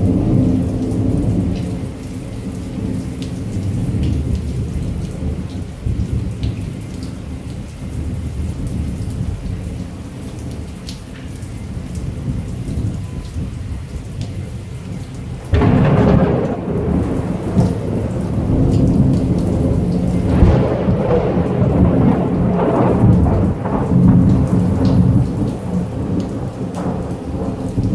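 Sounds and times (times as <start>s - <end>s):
loud thunderclap: 0.0s - 6.4s, 15.4s - 27.9s
heavy rain: 0.0s - 27.9s
thunder rumbling: 0.0s - 27.9s.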